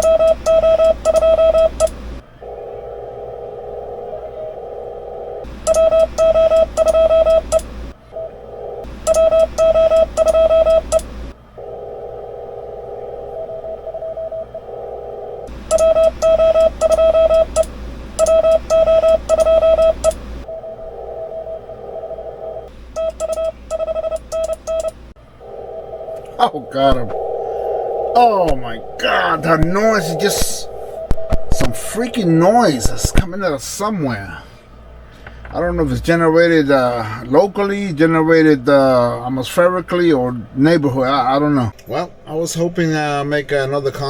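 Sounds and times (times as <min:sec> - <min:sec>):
morse code beeps: 0:00.0 - 0:07.6, 0:08.2 - 0:33.4
radio static: 0:02.4 - 0:05.5, 0:11.6 - 0:15.5, 0:20.5 - 0:22.7, 0:25.4 - 0:33.9.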